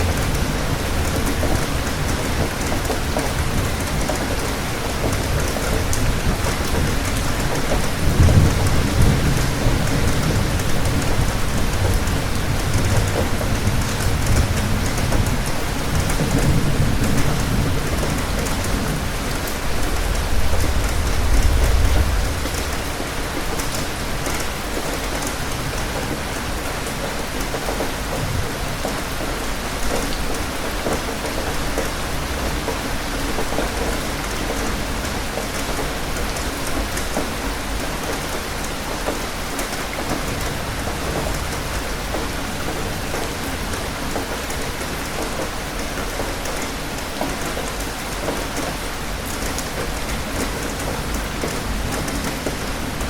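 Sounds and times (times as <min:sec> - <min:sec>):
heavy rain falling: 0:00.0 - 0:53.0
low roll of thunder: 0:05.8 - 0:22.9.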